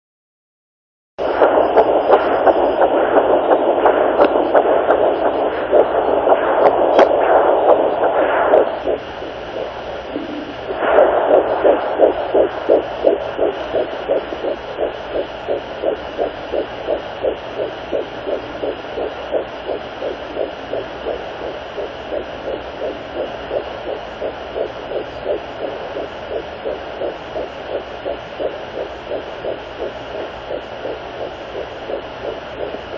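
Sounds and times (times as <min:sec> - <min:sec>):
uneven rushing noise: 0:01.2 - 0:21.1
rhythmic whooshing heartbeat: 0:01.2 - 0:32.9.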